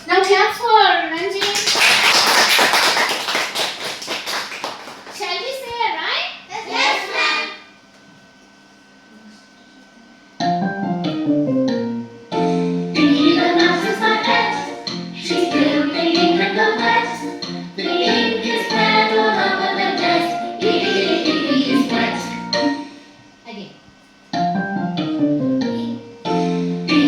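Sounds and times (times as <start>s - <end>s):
children's song with singing: 6.5s - 7.7s, 12.9s - 23.0s, 25.7s - 27.0s.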